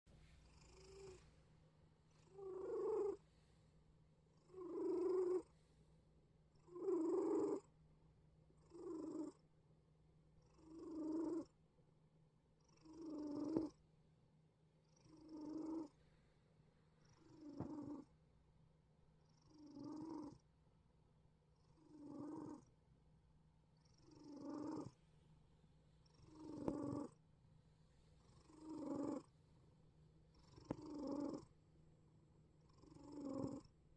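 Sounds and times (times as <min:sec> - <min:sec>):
cat wheezing and snoring: 0:00.4 - 0:01.2, 0:02.2 - 0:03.3, 0:06.6 - 0:07.7, 0:12.6 - 0:13.8, 0:14.9 - 0:16.0, 0:17.0 - 0:18.1, 0:19.2 - 0:20.4, 0:21.6 - 0:22.7, 0:23.8 - 0:25.0, 0:26.0 - 0:27.2, 0:28.2 - 0:29.3, 0:30.3 - 0:31.5, 0:32.6 - 0:33.7.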